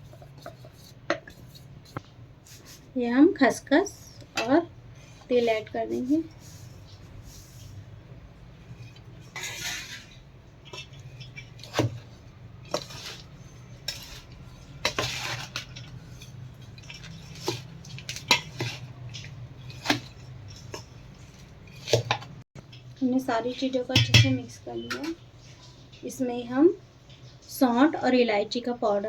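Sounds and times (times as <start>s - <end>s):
spoon clinking and scraping bowl: 8.7s - 22.3s.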